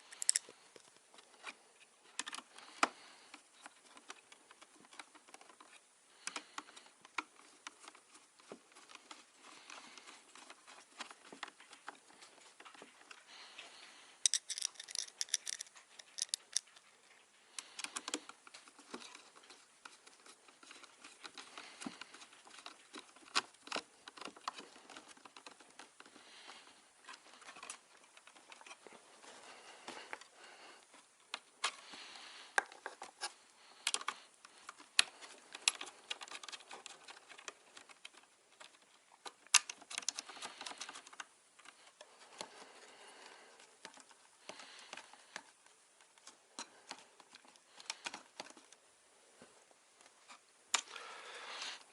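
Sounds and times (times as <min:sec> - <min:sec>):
hands handling small parts and tools: 0:00.0 - 0:48.8.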